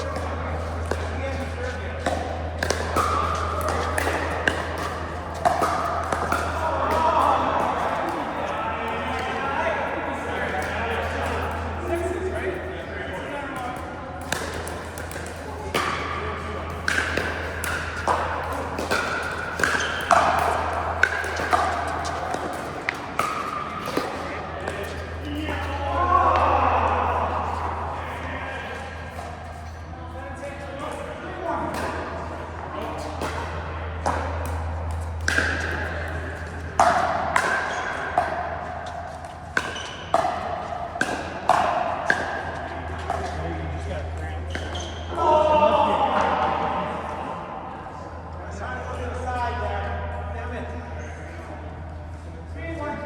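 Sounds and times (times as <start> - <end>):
steady low hum: 0.0 - 53.0
paddles hitting plastic ball: 0.1 - 9.3, 13.6 - 27.8, 32.9 - 43.4.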